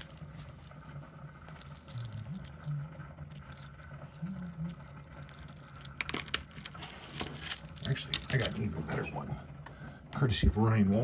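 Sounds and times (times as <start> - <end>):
small metallic clicks and rattles: 0.0 - 0.8, 1.5 - 8.6.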